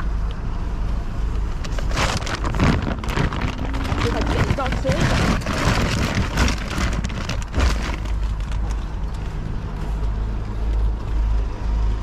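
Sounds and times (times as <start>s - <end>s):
knocks and rustling: 1.6s - 9.3s.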